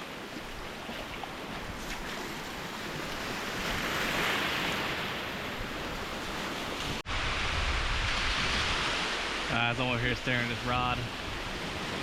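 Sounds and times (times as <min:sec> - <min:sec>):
ocean surf washing: 0:00.0 - 0:12.0
wind buffeting microphone: 0:06.8 - 0:09.5.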